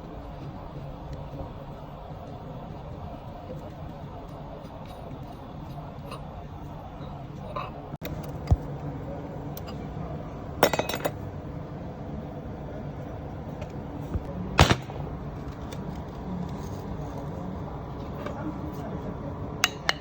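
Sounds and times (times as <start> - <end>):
metal tools clinking: 10.6 - 11.2.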